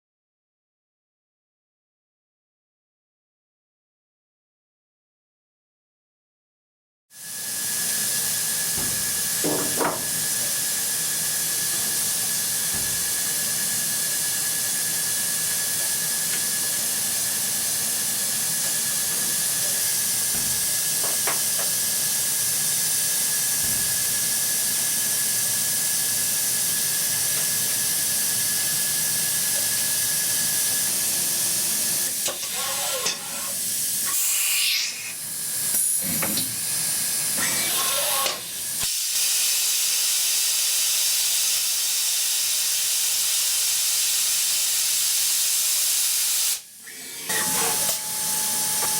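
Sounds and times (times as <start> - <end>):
milling machine hiss: 7.2 - 48.9
high spindle whine: 46.9 - 48.9.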